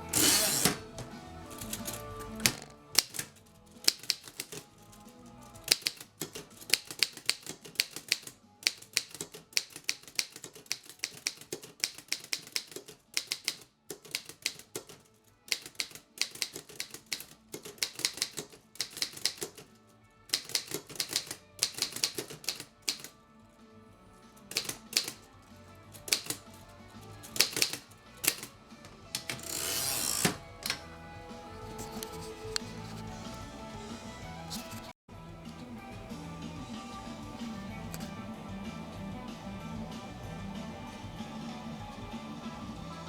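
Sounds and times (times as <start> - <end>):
manual typewriter typing: 0.1 - 23.1, 24.4 - 25.2, 26.0 - 26.5, 27.2 - 28.5.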